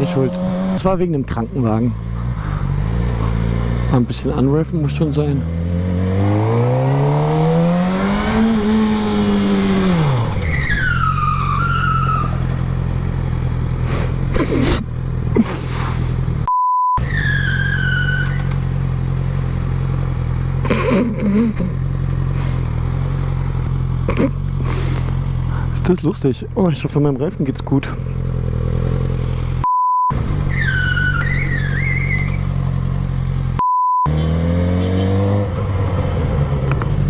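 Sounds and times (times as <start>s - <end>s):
tyre squealing: 6.2s - 12.8s, 13.8s - 16.3s, 17.0s - 18.7s, 20.6s - 23.4s, 30.1s - 32.6s
motorcycle engine idling: 12.2s - 16.5s, 18.1s - 29.6s
short beep: 16.5s - 17.0s, 29.6s - 30.1s, 33.6s - 34.1s.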